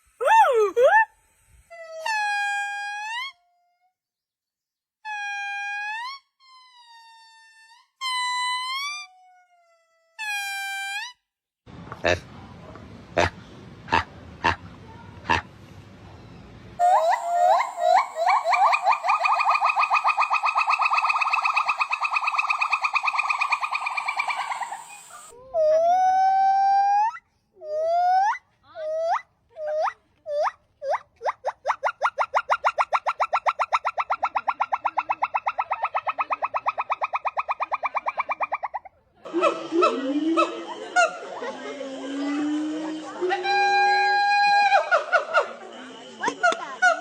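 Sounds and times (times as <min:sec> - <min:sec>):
monkey calling: 0:16.8 - 0:47.0.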